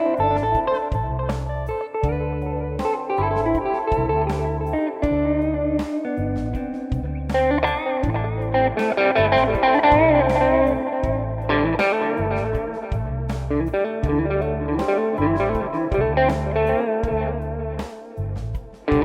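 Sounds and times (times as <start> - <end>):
backing track: 0.0 - 19.0
electric guitar picking single notes: 0.0 - 19.0
repeating low bass part: 0.1 - 19.0.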